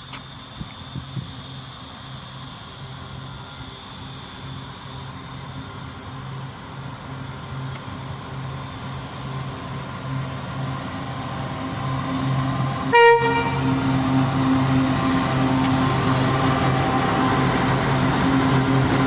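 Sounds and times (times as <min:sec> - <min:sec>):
diesel train engine drone: 0:00.0 - 0:19.0
train horn toot: 0:12.8 - 0:14.0.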